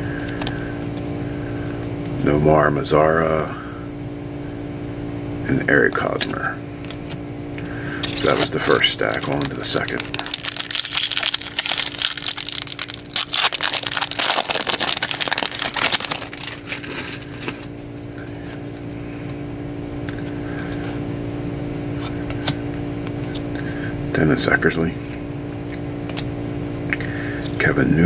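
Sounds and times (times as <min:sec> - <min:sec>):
low electrical hum: 0:00.0 - 0:28.0
foil wrapper crinkling: 0:06.8 - 0:18.8.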